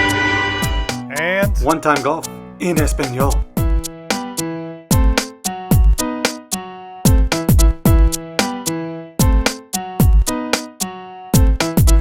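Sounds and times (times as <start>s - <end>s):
crisp percussion strokes: 0.0s - 1.7s.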